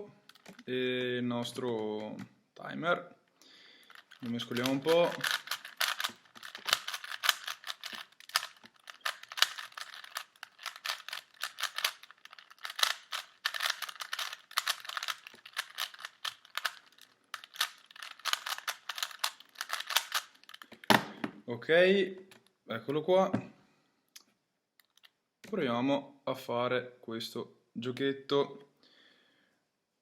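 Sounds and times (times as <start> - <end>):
plastic puzzle cube clicking: 0.3 - 2.3, 3.9 - 20.9.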